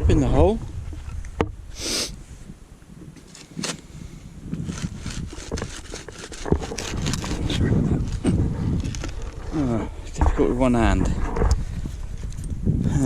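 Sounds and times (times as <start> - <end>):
soil being scraped and dug: 1.8 - 2.2, 3.2 - 12.0.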